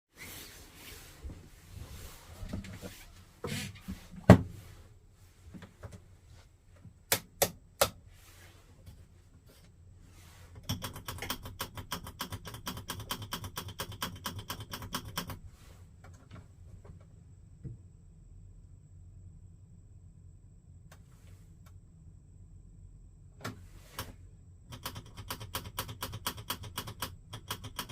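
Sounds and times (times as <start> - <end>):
sharp clicks: 7.1 - 8.0, 10.6 - 15.4, 24.7 - 27.9.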